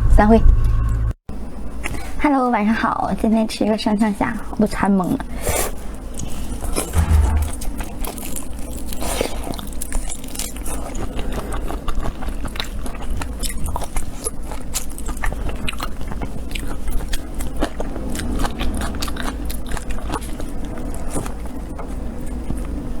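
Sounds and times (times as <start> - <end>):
low hum: 7.0 - 8.3
chewing shrimp crackles: 9.0 - 23.0.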